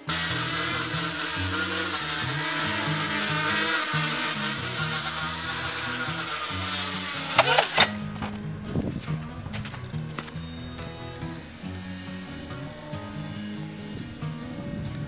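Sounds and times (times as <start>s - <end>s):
background music with bass line: 0.0s - 15.0s.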